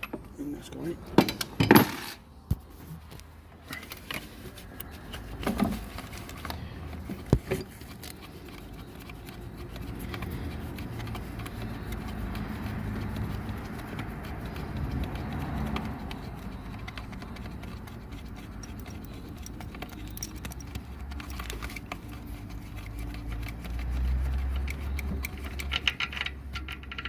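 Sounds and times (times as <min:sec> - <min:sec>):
hand tools clinking on metal parts: 0:18.3 - 0:23.6.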